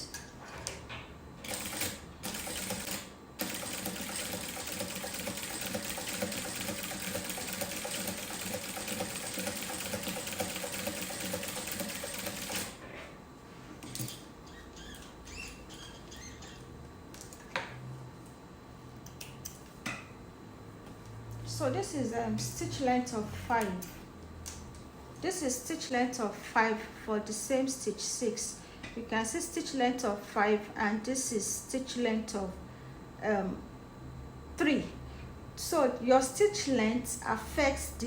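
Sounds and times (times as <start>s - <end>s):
sewing machine running: 1.4s - 12.8s.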